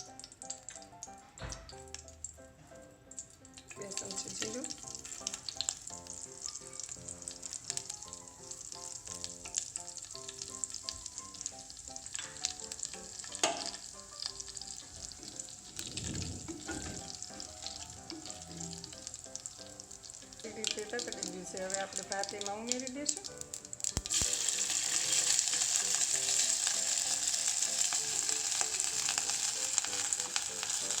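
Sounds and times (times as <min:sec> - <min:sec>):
seeds sizzling and popping in oil: 0:00.0 - 0:31.0
pan being stirred: 0:12.1 - 0:22.9, 0:24.0 - 0:31.0.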